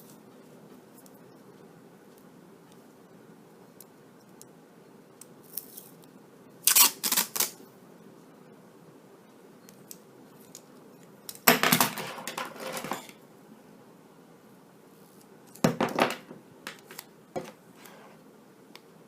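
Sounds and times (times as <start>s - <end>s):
tape crackling: 5.4s - 7.6s
tape ripping off roll: 6.6s - 7.6s.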